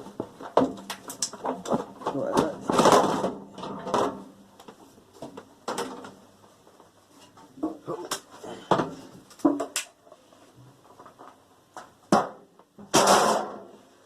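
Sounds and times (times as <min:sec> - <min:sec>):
metal and plastic parts clattering: 0:00.2 - 0:04.3, 0:05.2 - 0:06.2, 0:12.8 - 0:13.7.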